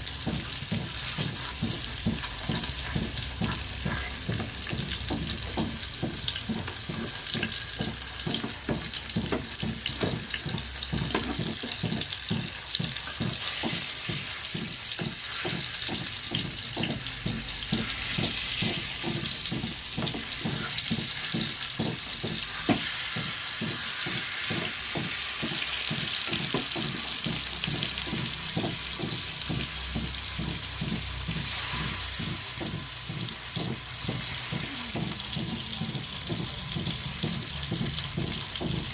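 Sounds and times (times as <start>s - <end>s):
chicken frying in hot oil: 0.0s - 38.9s.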